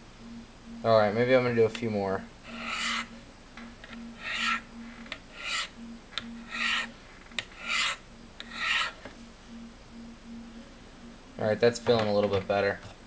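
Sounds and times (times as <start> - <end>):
blade rasping on ceramic stones: 7.6 - 9.0.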